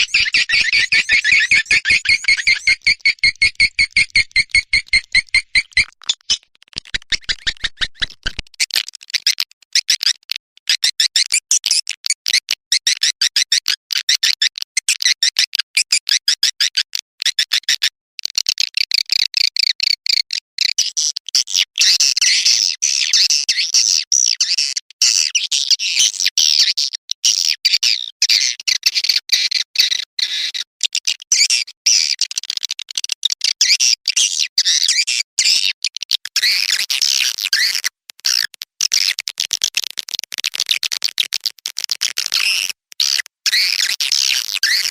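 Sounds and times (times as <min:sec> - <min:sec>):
recorded swiftlet twittering: 0:00.0 - 0:08.4.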